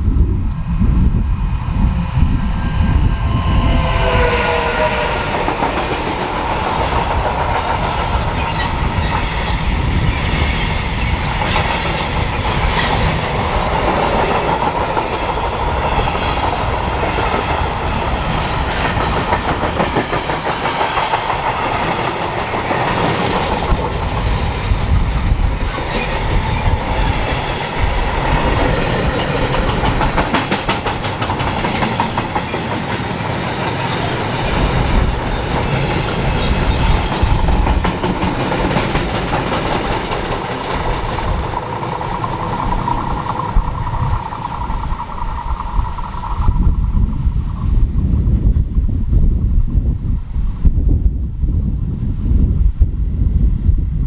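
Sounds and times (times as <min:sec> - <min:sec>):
train passing at speed: 0:00.0 - 0:54.0
falling tones: 0:00.5 - 0:09.3
wheels clicking over rail joints: 0:03.8 - 0:47.0.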